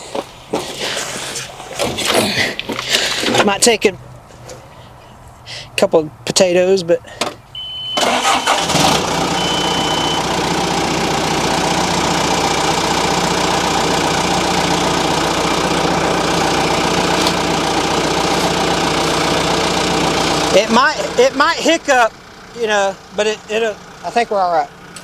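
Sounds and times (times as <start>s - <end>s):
diesel engine cranking and idling: 0.0s - 25.0s
short high beep: 7.6s - 8.6s, 9.3s - 10.3s.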